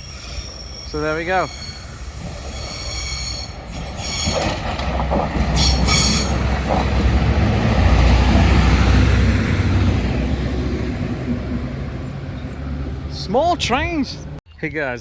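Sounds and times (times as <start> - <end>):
train wheel squeal: 0.0 - 4.7, 5.4 - 6.8
train low rumble: 0.0 - 14.4.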